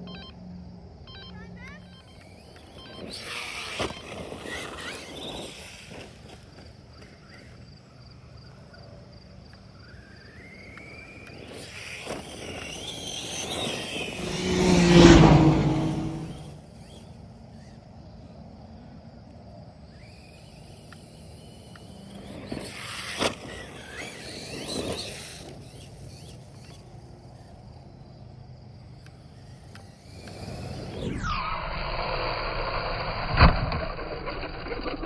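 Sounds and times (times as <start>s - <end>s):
rc truck motor whine: 0.0s - 35.0s
tyre and chassis noise: 11.4s - 16.6s.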